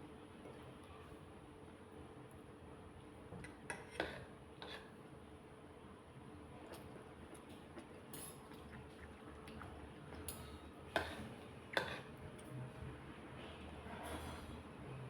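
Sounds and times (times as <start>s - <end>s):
chewing with soft smacks: 6.6s - 12.6s.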